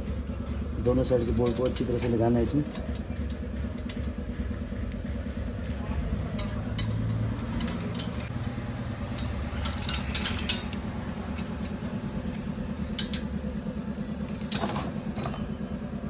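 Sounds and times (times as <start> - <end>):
engine idling: 0.0 - 16.0
metallic clinks of tools and bolts: 5.6 - 10.8, 14.4 - 15.5.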